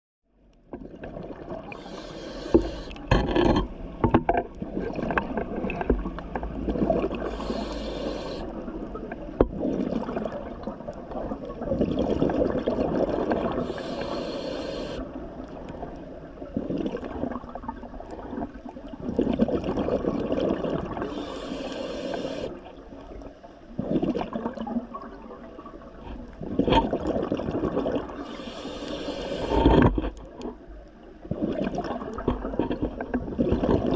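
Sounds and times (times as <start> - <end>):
regulator hissing inhalations: 1.8 - 3.0, 7.3 - 8.5, 13.6 - 15.1, 21.1 - 22.6, 28.2 - 29.7.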